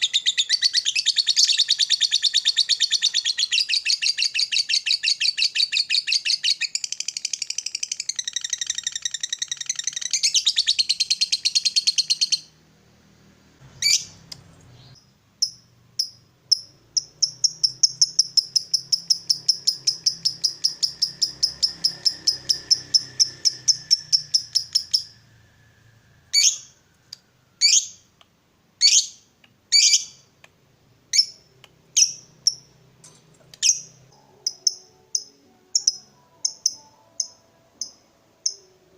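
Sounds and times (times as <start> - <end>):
lovebird sharp chirps: 0.0 - 12.5, 13.7 - 25.5, 26.2 - 28.1, 28.8 - 30.3, 31.1 - 32.8, 33.6 - 38.8
lovebird chattering trill: 14.8 - 25.2, 28.8 - 30.2.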